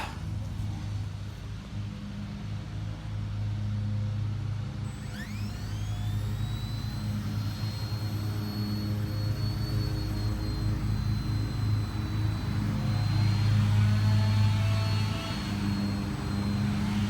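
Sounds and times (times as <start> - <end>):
electric motor whine: 4.8 - 17.0
low hum: 4.8 - 17.0.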